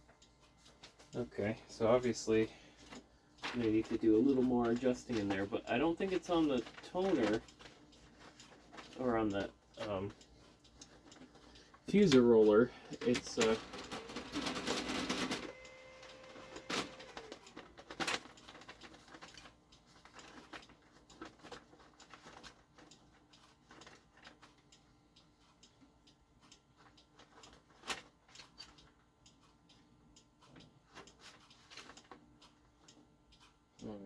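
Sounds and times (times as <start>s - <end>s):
printer hum: 13.4s - 17.4s
paper-feed drive thumping: 13.4s - 18.2s
printer light clicks: 15.2s - 17.5s.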